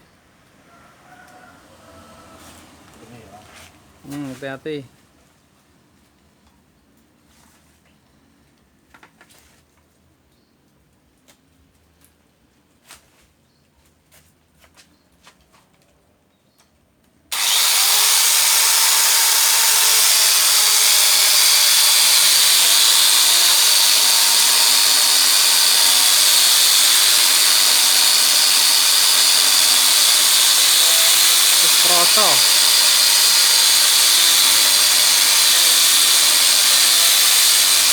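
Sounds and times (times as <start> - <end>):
angle grinder saw whining: 17.3 - 37.9.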